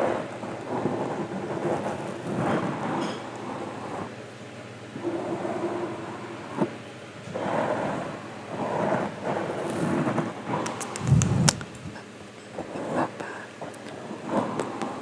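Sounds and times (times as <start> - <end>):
sharp clicks: 10.6 - 11.8
breath puff on microphone: 10.7 - 12.0.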